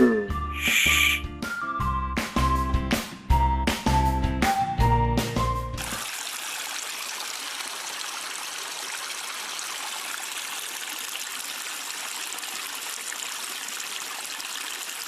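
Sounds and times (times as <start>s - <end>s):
running water hiss: 0.5s - 1.2s.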